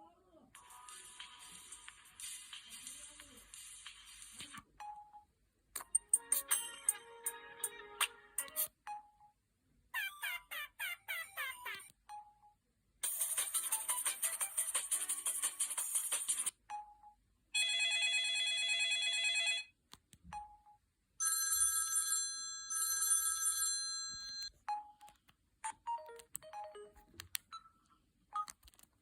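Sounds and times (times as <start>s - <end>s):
phone ringtone melody: 16.7s - 19.7s, 20.3s - 28.8s.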